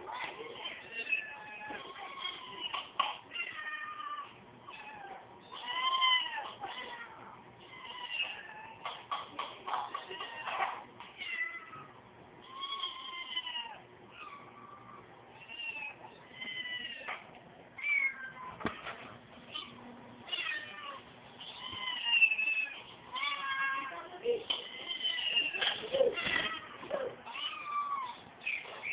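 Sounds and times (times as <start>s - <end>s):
cat meowing: 0.8s - 8.9s, 19.5s - 24.0s, 24.6s - 28.9s.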